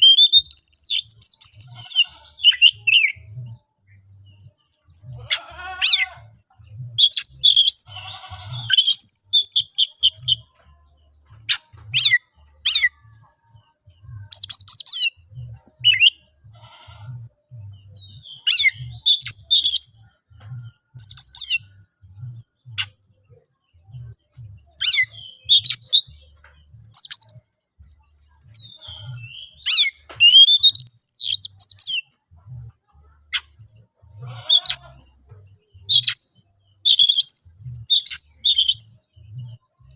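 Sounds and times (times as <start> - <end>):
bird singing whistles and trills: 0.0 - 3.2, 7.0 - 8.0, 8.6 - 10.5, 14.3 - 15.2, 15.8 - 16.2, 17.8 - 20.0, 24.7 - 27.5, 28.5 - 32.1, 35.8 - 39.6.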